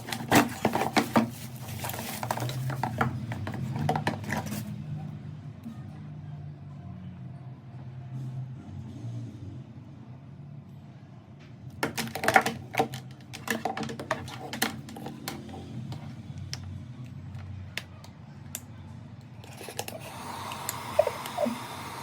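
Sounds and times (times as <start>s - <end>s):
clicks and knocks of handling packaging: 0.0s - 4.8s, 11.7s - 16.6s.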